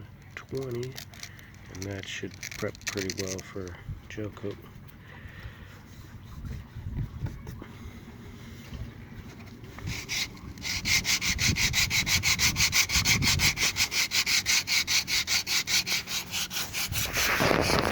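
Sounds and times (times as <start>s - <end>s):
sandpaper rubbing on fiberglass: 9.8s - 17.9s.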